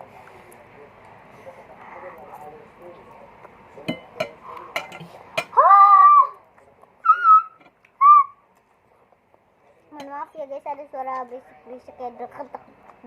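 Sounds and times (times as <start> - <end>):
animal calling in high cries: 5.6 - 6.4.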